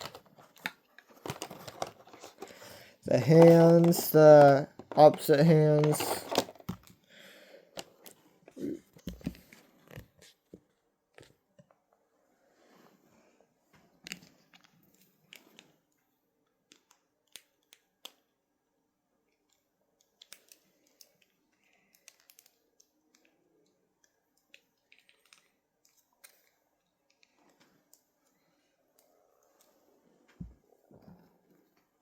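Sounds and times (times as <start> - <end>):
soft plastic rustling: 0.0 - 7.0
small plastic clicks and taps: 16.6 - 18.3, 19.3 - 28.4.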